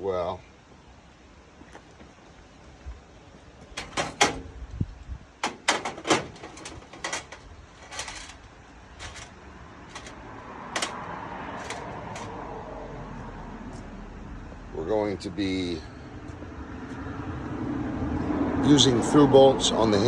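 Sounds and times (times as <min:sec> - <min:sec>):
metal door hardware clicking: 0:03.7 - 0:04.6, 0:05.4 - 0:12.4.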